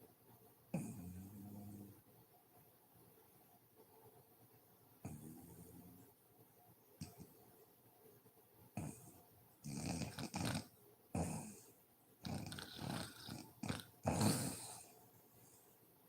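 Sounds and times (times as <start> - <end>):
woman snoring: 9.7 - 11.5, 12.2 - 14.9.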